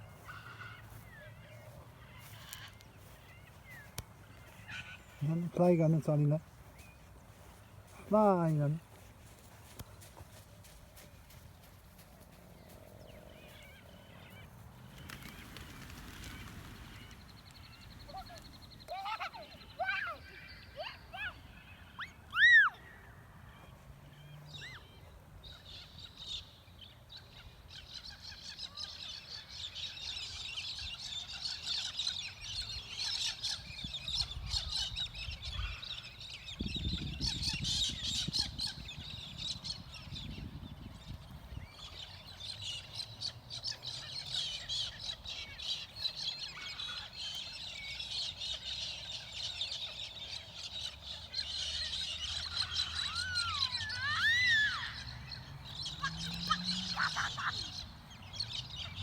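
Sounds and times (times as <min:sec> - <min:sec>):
flock of birds chattering: 0:00.0 - 0:09.4, 0:41.6 - 0:59.0.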